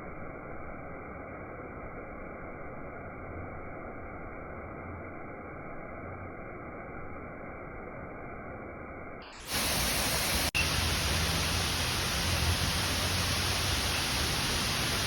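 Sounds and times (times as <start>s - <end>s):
waterfall rushing: 9.4s - 15.0s.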